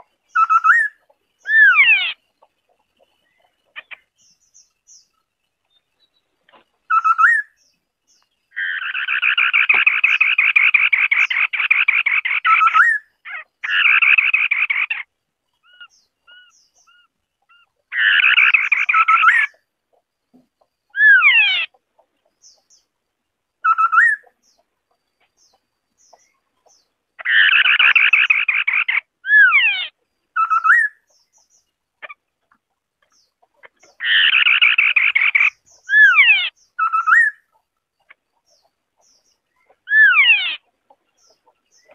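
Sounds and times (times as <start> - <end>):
bird singing trills and whistles: 0.2 - 2.2, 6.9 - 19.6, 20.9 - 21.8, 23.6 - 24.6, 25.4 - 32.2, 33.1 - 41.9.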